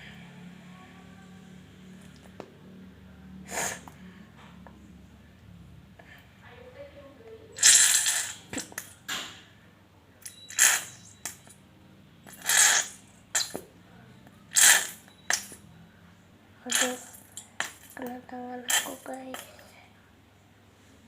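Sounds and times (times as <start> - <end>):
squeeze bottle sputtering: 7.6 - 8.9, 10.5 - 11.4, 12.3 - 13.6, 14.5 - 15.6, 16.7 - 18.0.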